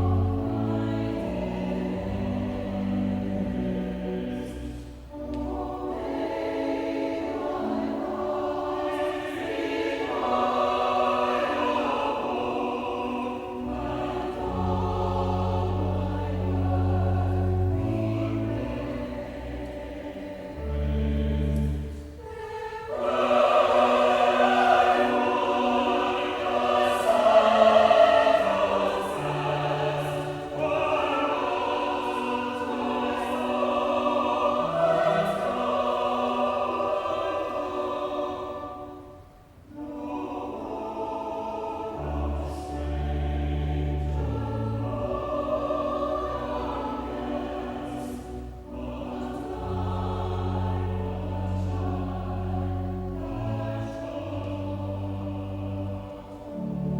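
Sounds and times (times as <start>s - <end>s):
church choir singing: 0.0s - 56.9s
sustained low accompanying notes: 0.0s - 56.9s.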